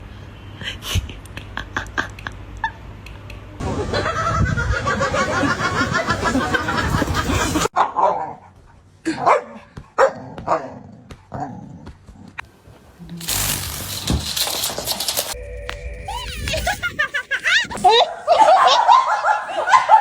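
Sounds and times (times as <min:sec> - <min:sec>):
dog barking: 0:07.8 - 0:08.4, 0:09.1 - 0:10.8, 0:17.8 - 0:20.0
loud busy background noise: 0:13.2 - 0:15.4.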